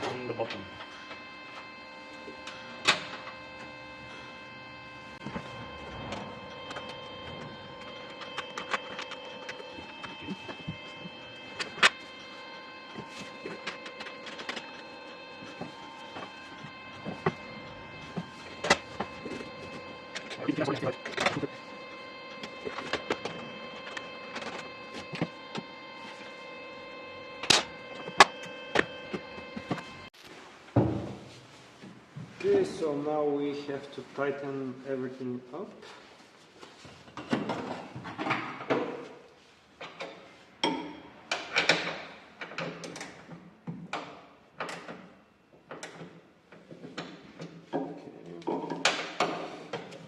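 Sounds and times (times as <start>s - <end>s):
steady humming tone: 0.0s - 34.9s.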